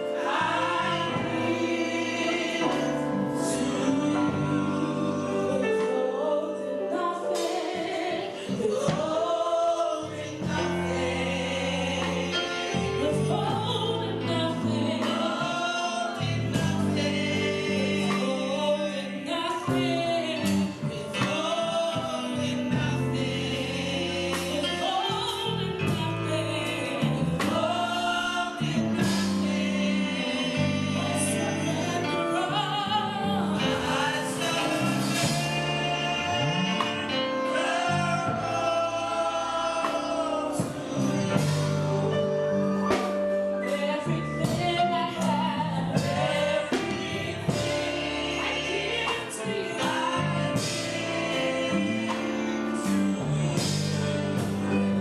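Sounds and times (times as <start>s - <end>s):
held instrumental chords: 0.0s - 55.0s
voices singing gospel song: 0.0s - 55.0s.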